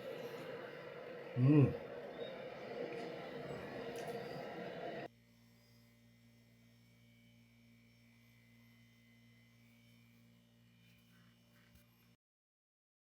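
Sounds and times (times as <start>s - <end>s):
low electrical hum: 0.0s - 12.2s.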